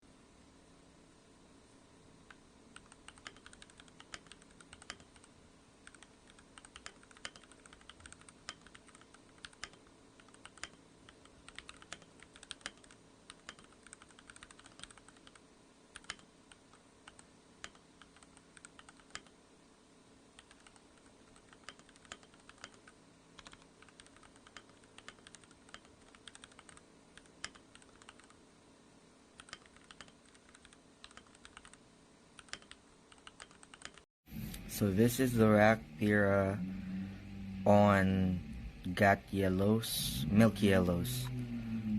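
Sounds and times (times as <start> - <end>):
mechanical keyboard typing: 2.8 - 5.3, 5.9 - 15.4, 16.0 - 16.2, 20.4 - 20.8, 21.4 - 28.4, 29.4 - 31.8, 32.4 - 34.0.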